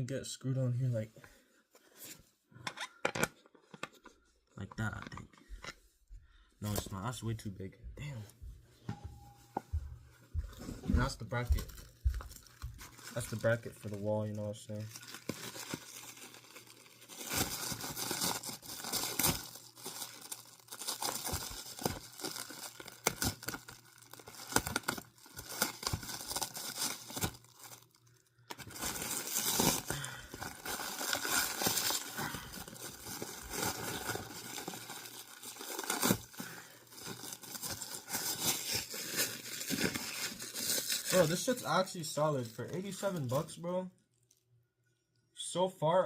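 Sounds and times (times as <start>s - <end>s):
plastic packaging crinkling: 11.0s - 44.4s.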